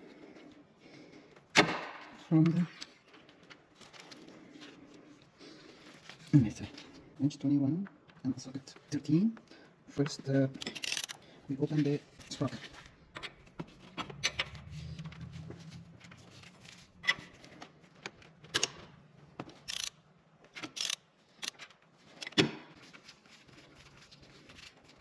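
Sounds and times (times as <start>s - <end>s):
low hum: 12.0s - 19.7s.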